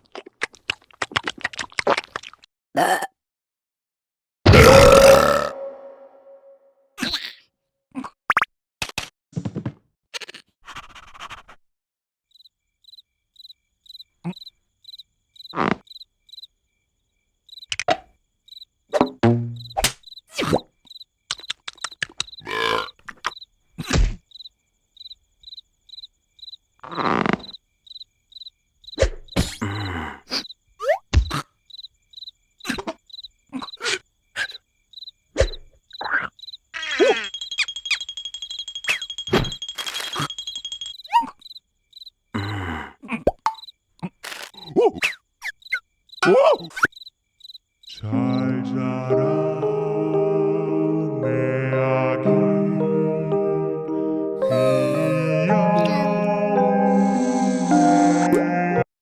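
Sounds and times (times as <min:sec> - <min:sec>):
cricket chirp effect: 0:12.3 - 0:50.6
cartoon knocks and hits: 0:18.9 - 0:20.0.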